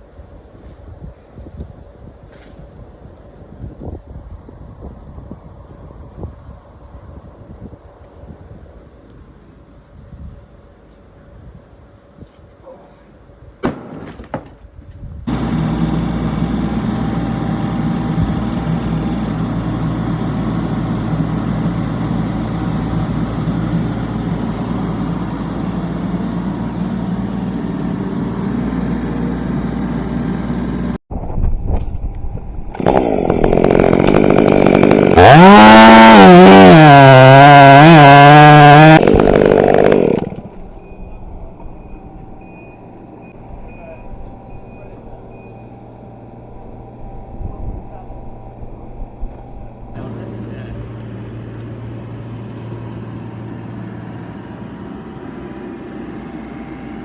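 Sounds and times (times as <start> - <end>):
chainsaw cutting timber: 15.3 - 31.0, 32.7 - 40.8
low engine running: 15.3 - 31.0, 31.8 - 57.0.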